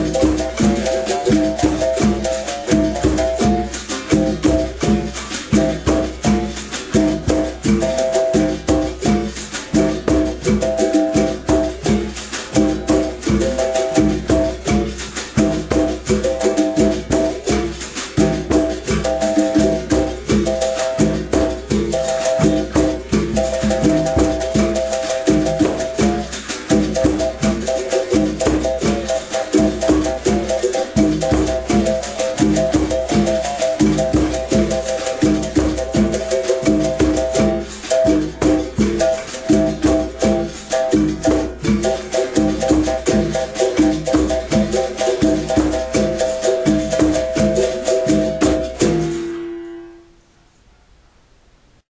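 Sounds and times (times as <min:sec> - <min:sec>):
shaker rattle: 0:00.0 - 0:49.5
musical bow twanging: 0:18.4 - 0:50.3.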